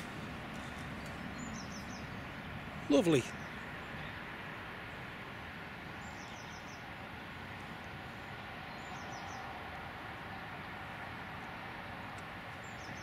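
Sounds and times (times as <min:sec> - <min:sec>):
small bird singing: 0:00.0 - 0:04.2, 0:06.0 - 0:06.9, 0:08.6 - 0:09.5, 0:12.6 - 0:13.0
steady outdoor hiss: 0:00.0 - 0:13.0.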